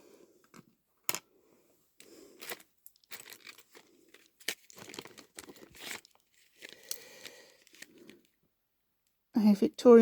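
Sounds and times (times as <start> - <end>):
crinkly rustling: 2.2 - 8.4.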